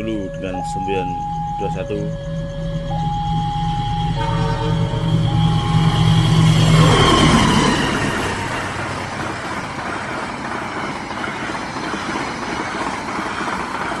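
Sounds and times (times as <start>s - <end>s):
train carriages rolling on rails: 4.1s - 14.0s.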